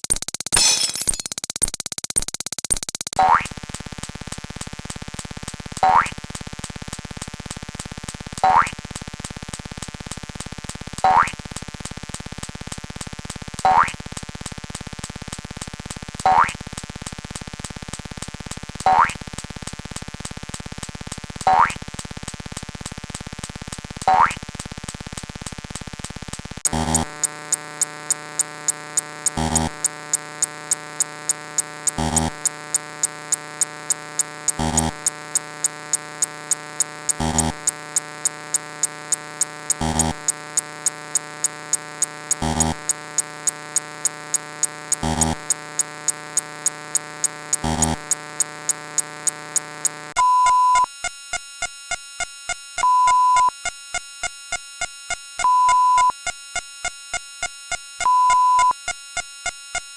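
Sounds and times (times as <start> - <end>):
electronic beep: 0.0 - 3.2, 36.2 - 59.9
sharp electronic ticks: 0.0 - 3.4, 25.8 - 59.9
buzzing synthetic chord: 26.7 - 50.1.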